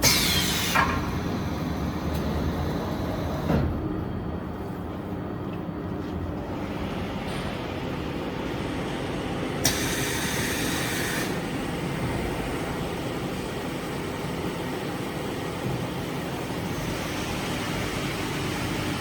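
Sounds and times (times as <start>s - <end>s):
hiss: 9.6s - 11.4s.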